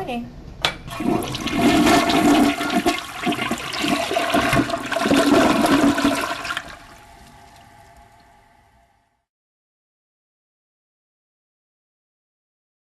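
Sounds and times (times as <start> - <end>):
toilet flushing: 0.9 - 8.4.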